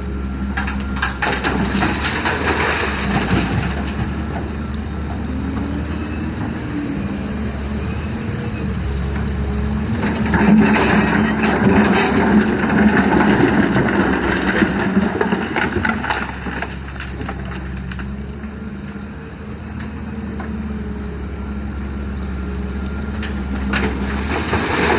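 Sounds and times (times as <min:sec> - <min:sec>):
heavy diesel machinery running: 0:00.0 - 0:24.9
gravel clattering and scraping: 0:00.5 - 0:05.2, 0:09.9 - 0:18.5, 0:23.2 - 0:24.9.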